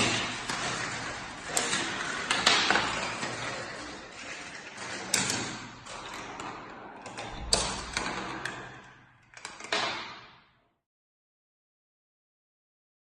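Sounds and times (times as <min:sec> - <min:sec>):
marbles clicking on track pieces: 0:00.0 - 0:10.0
marbles rolling on plastic track: 0:00.0 - 0:10.0.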